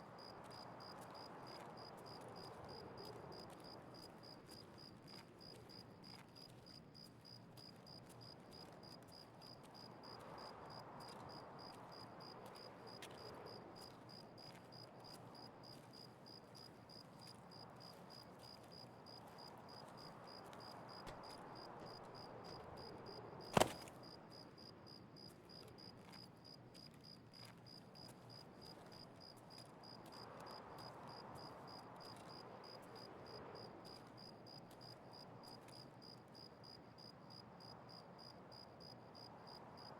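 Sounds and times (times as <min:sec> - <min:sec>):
crickets chirping: 0:00.0 - 0:39.9
short sharp crack: 0:23.5 - 0:23.9.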